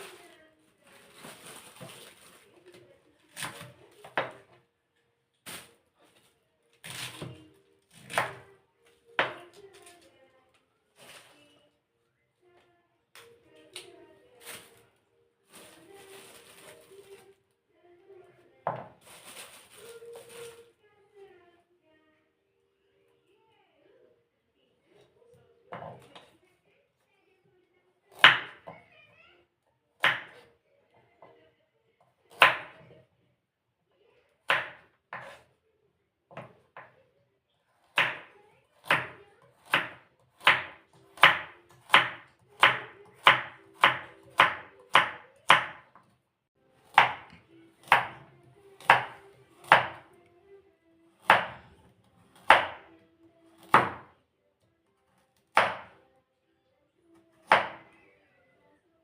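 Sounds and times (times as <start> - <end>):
knife chopping on cutting board: 8.0 - 8.5, 32.4 - 32.8, 34.5 - 35.4, 37.9 - 45.9, 46.9 - 48.2, 48.8 - 50.0, 51.2 - 51.6, 52.4 - 52.9, 53.6 - 54.1, 55.5 - 56.0, 57.4 - 57.9.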